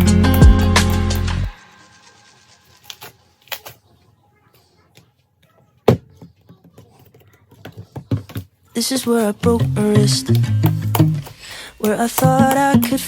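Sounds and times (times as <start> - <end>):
background music: 0.0 - 3.1, 9.4 - 13.0.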